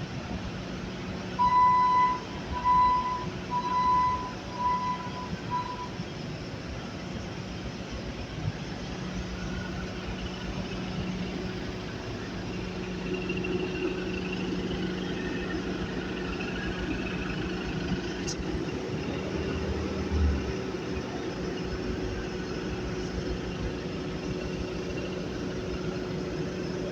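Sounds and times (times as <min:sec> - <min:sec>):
loader engine running: 0:00.0 - 0:26.9.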